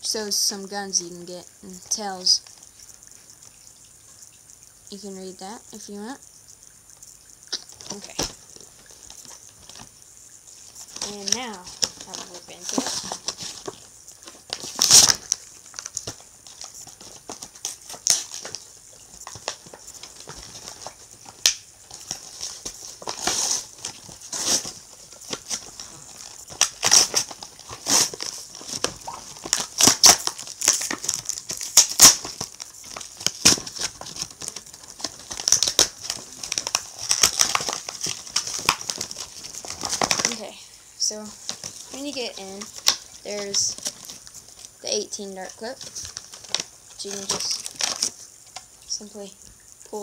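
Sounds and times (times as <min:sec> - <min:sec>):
cardboard and plastic tearing: 0:07.6 - 0:09.9, 0:10.7 - 0:40.4, 0:41.4 - 0:44.7, 0:45.7 - 0:48.6.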